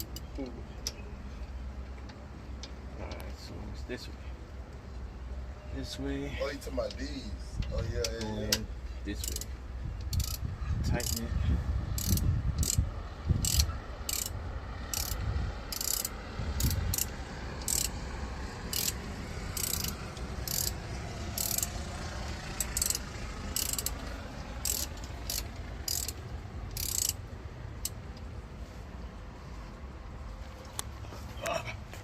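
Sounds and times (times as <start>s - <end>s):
ratchet wrench clicking: 0.0s - 1.0s, 9.2s - 10.4s, 11.0s - 11.3s, 12.0s - 18.0s, 18.6s - 21.8s, 22.4s - 28.3s.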